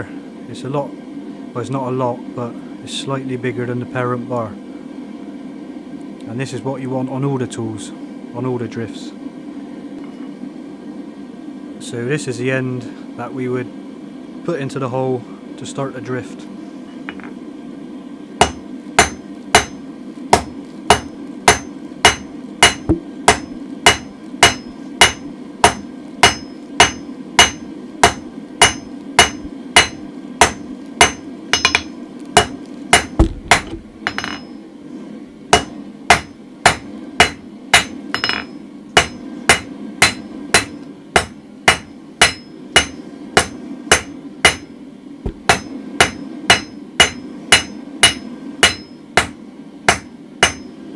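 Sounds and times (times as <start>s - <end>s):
hammer striking steel on anvil: 18.4s - 34.6s, 35.6s - 44.7s, 45.3s - 50.8s
low rumble: 33.2s - 34.1s.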